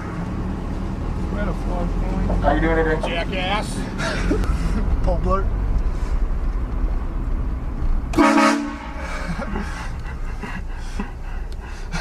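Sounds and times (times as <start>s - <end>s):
vehicle rumble: 0.0s - 12.0s
train horn blast: 8.1s - 9.0s.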